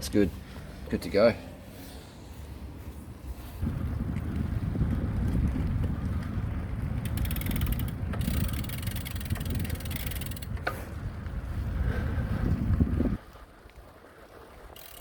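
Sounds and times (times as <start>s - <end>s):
wind rumbling on microphone: 2.0s - 15.0s
bicycle freehub ticking: 4.0s - 11.3s, 14.7s - 15.0s.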